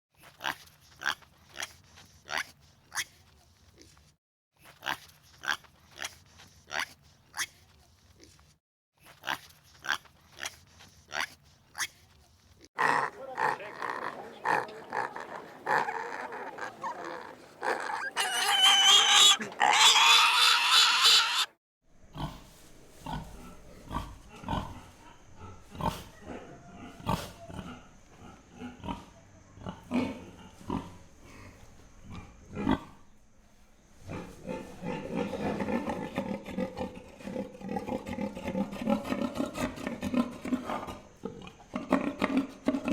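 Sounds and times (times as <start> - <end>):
pig snuffling and clicking: 0.2 - 12.7
pigs grunting: 12.8 - 21.5, 22.1 - 33.1, 34.0 - 42.9
pigs squealing: 12.8 - 21.6.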